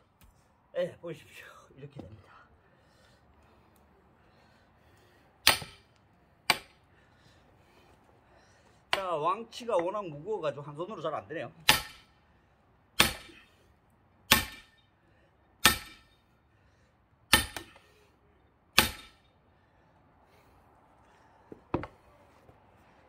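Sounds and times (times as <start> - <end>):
hammer striking axe: 5.4 - 5.9, 6.5 - 6.8, 11.6 - 12.1, 13.0 - 13.5, 14.3 - 14.8, 15.6 - 16.1, 17.3 - 17.8, 18.8 - 19.2.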